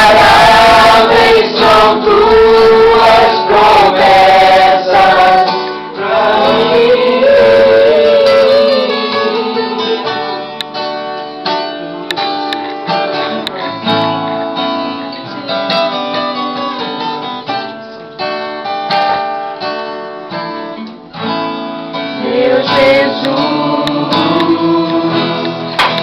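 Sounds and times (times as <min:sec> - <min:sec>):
singers holding a note: 0:00.0 - 0:10.0, 0:22.2 - 0:25.8
acoustic guitar strumming: 0:00.0 - 0:26.0.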